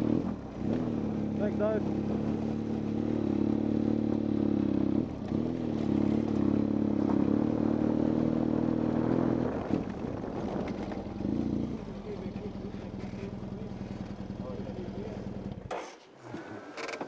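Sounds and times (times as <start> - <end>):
motorcycle engine idling: 9.9 - 15.7.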